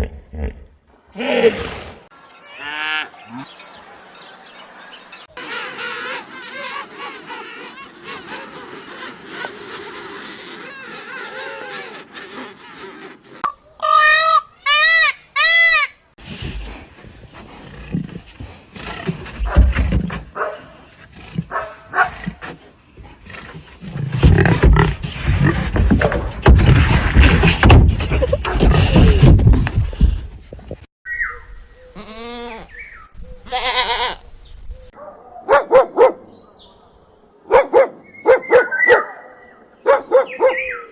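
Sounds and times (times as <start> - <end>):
low grunting: 0.0 - 3.6
farm animal calls: 2.3 - 15.9, 31.1 - 40.9
thumping noises: 17.9 - 20.4, 23.8 - 30.9.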